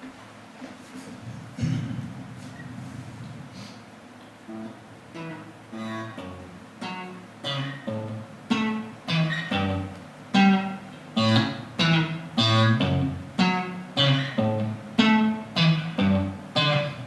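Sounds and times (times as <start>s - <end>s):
guitar strumming chords: 4.5s - 17.0s.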